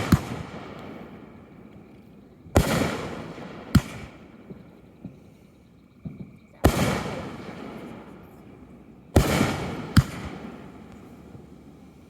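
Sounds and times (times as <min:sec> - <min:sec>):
faint firework pops: 0:00.0 - 0:01.1, 0:01.7 - 0:05.4, 0:06.0 - 0:08.2, 0:09.2 - 0:11.5
fireworks bangs: 0:00.0 - 0:05.4, 0:06.0 - 0:12.0.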